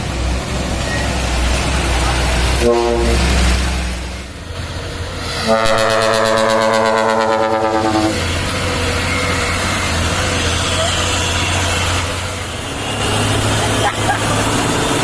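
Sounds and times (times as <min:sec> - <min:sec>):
truck engine rumbling: 0:00.0 - 0:15.0
truck air horn blasts: 0:02.6 - 0:03.3, 0:05.4 - 0:08.3.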